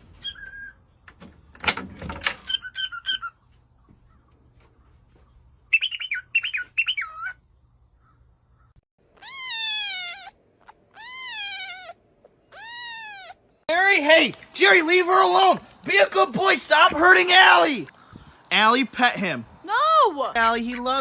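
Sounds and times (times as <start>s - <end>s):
high chirping calls: 2.4s - 4.3s, 5.6s - 13.7s
cat meowing: 9.2s - 13.5s.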